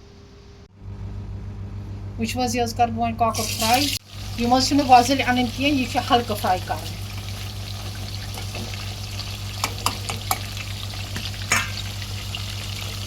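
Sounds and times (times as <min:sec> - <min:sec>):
chicken sizzling in oil: 0:03.4 - 0:13.0
utensil clicking against pan: 0:09.6 - 0:10.5.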